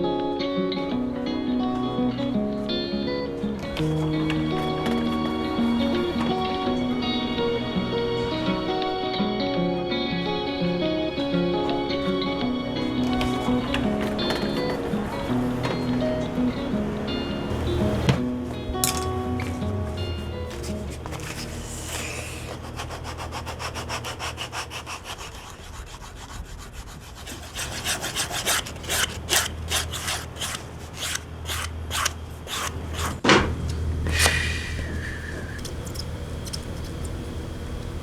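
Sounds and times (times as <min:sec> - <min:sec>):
hand tool rubbing a boot: 0:19.4 - 0:33.2
steady low hum: 0:25.6 - 0:38.0.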